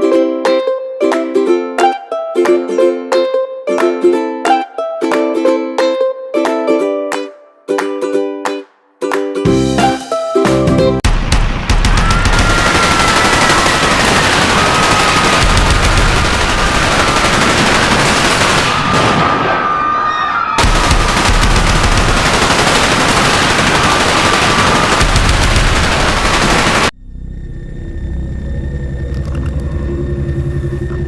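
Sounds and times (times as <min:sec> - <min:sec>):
rapid machine-gun fire: 0:11.1 - 0:19.2, 0:20.6 - 0:26.9
faint wavering tone: 0:27.0 - 0:31.0.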